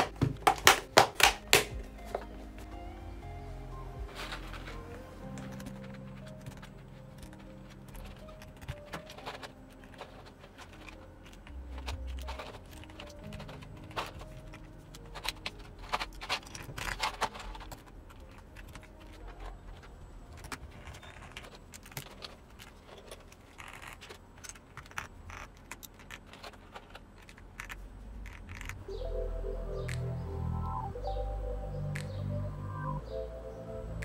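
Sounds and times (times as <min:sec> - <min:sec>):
keyboard parts clicking into place: 0:04.1 - 0:28.9.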